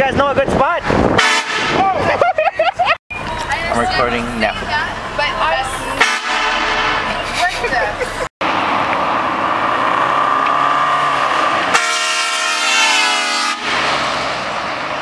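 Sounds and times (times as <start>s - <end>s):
air horn blast: 1.2s - 1.8s, 6.0s - 7.1s, 11.7s - 14.2s.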